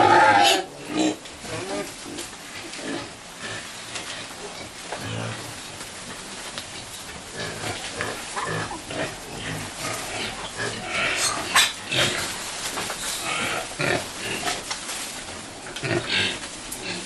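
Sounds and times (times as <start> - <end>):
pigs grunting and squealing: 0.0 - 2.0, 7.3 - 12.4, 13.2 - 14.6.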